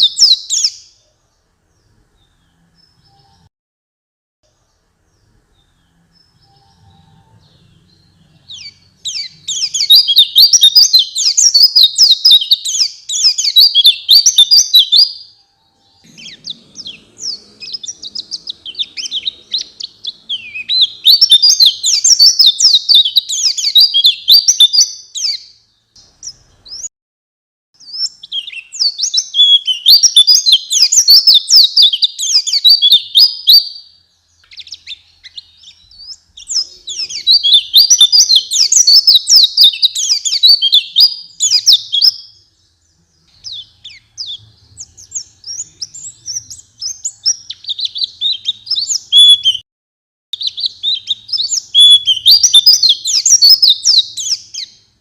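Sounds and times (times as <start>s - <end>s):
bird high rapid twittering: 5.6s - 15.2s, 15.8s - 26.9s, 34.4s - 42.3s, 50.4s - 54.8s.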